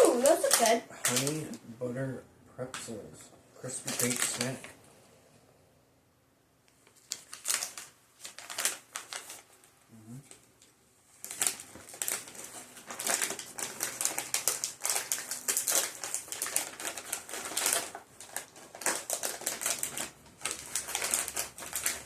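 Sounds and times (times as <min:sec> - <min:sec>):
plastic snack bag crinkling: 0:00.0 - 0:01.6, 0:03.6 - 0:04.8, 0:06.9 - 0:09.7, 0:10.3 - 0:22.0.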